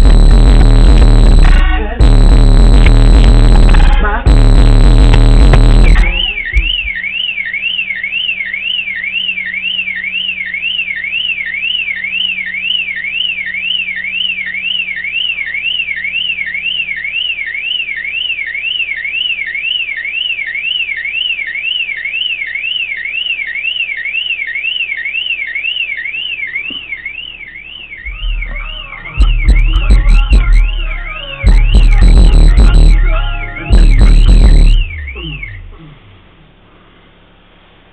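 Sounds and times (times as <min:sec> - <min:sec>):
loud bass-heavy music: 0:00.0 - 0:07.0, 0:28.1 - 0:36.4
car alarm siren warbling: 0:00.0 - 0:36.6.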